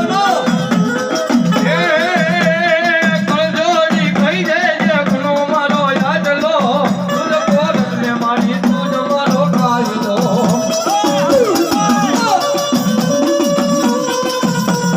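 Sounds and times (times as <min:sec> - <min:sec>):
rapid shaker percussion: 0:00.0 - 0:14.9
steady drum beat: 0:00.0 - 0:14.9
ornamented melody line: 0:06.8 - 0:14.9.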